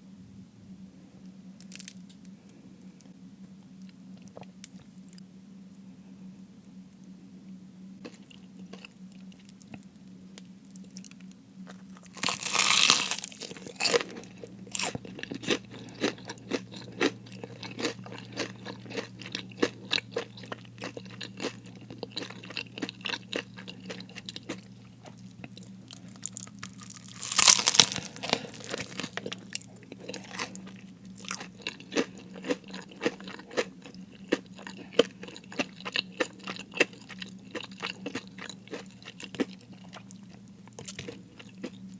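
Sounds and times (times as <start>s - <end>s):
faint low hum: 0.0s - 41.9s
crunching bites of fried food: 1.6s - 2.1s, 11.7s - 41.9s
crunchy chewing: 8.0s - 9.9s, 10.7s - 41.9s.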